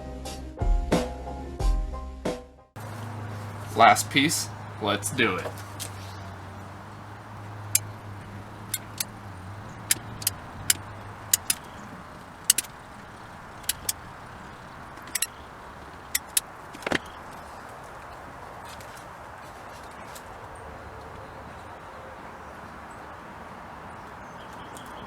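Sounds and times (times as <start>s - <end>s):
outdoor background noise: 2.8s - 25.0s
hand tools clicking: 7.2s - 17.4s.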